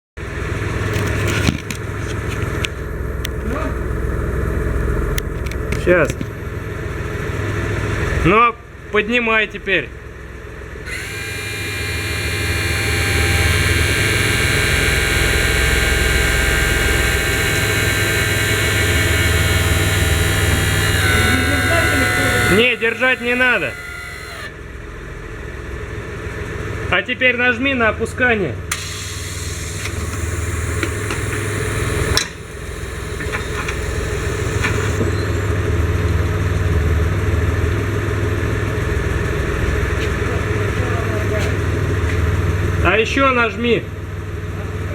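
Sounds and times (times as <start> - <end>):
engine idling: 10.9 - 24.6, 28.7 - 35.8
hydraulic pump whine: 10.9 - 24.8, 28.7 - 37.4
car engine idling: 28.7 - 35.0
sharp click: 28.7 - 35.0.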